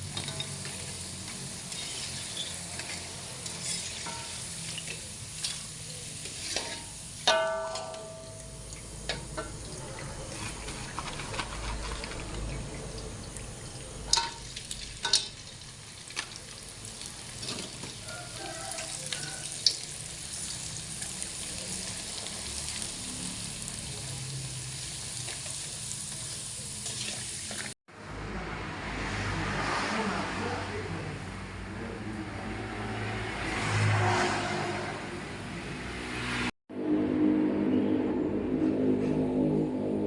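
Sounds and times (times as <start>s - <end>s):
food sizzling in a pan: 0.0s - 27.8s
utensil clinking against pan: 2.8s - 4.5s, 6.5s - 9.6s.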